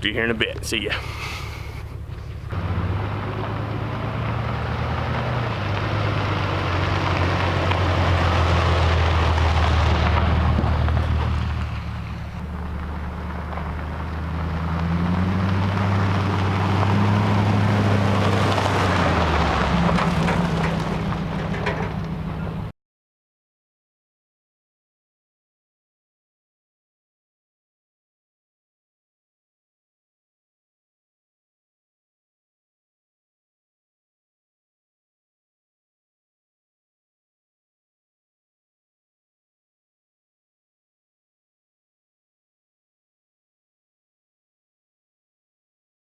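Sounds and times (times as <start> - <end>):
road and tyre noise: 0.0 - 22.7
vehicle engine hum: 0.0 - 22.7.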